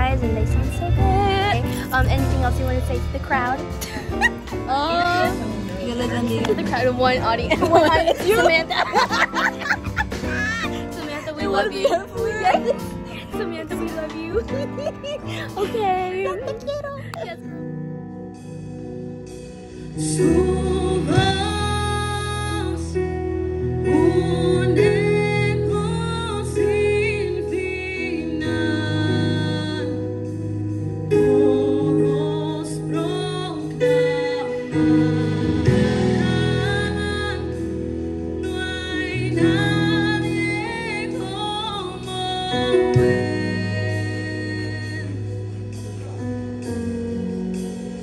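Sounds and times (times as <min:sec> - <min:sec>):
person singing gospel song: 0:20.0 - 0:23.2, 0:23.8 - 0:30.3, 0:31.1 - 0:45.8.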